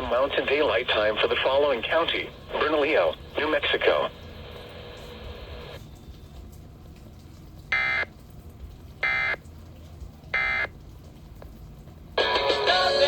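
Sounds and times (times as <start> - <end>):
music: 12.2 - 13.0.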